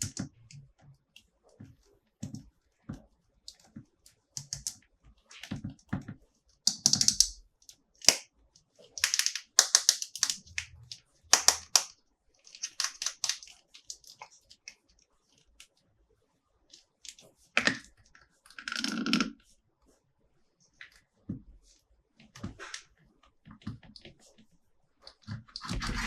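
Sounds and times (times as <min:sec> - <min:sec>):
plastic toys clicking and tapping: 0:04.4 - 0:04.8, 0:05.4 - 0:08.2, 0:08.9 - 0:14.9.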